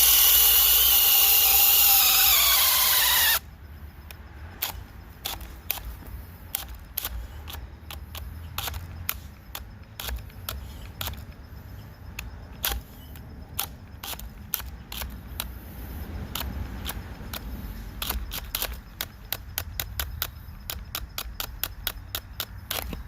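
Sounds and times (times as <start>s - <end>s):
drill boring into wood: 0.0s - 3.4s
sharp clicks and cracks: 4.1s - 11.4s, 12.1s - 15.5s, 16.3s - 23.0s.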